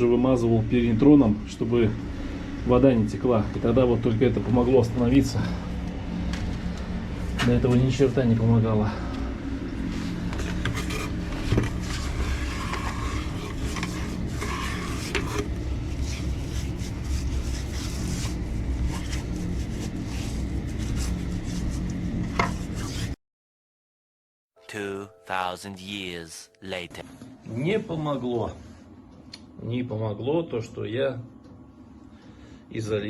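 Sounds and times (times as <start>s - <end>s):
steady low hum: 0.0s - 23.2s
hand tool scraping and clinking: 10.7s - 11.2s.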